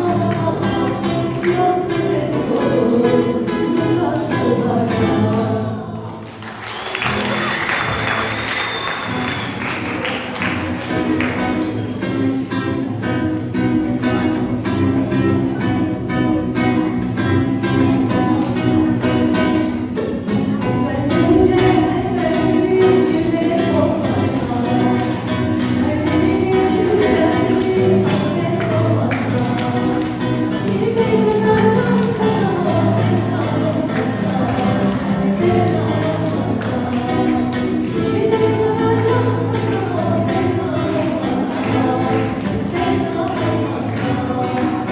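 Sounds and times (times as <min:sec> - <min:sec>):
song with singing and beat: 0:00.0 - 0:06.5, 0:19.4 - 0:44.9.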